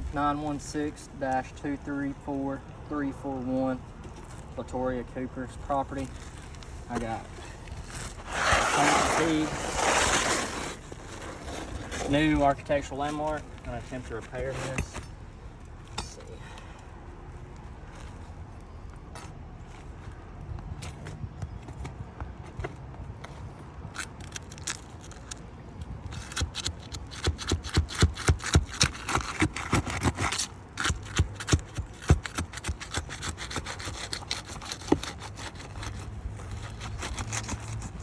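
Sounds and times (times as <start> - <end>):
hand tool scraping roof shingles: 6.0 - 15.1, 26.1 - 38.0.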